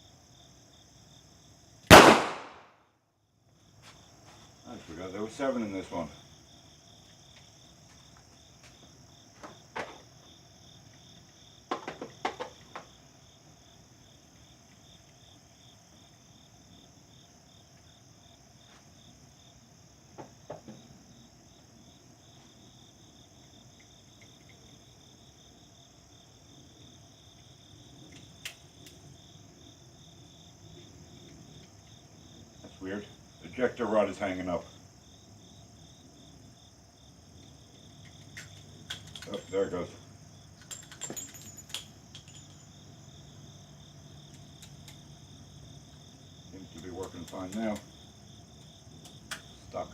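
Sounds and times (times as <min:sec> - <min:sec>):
insects chirping: 0:00.0 - 0:49.9.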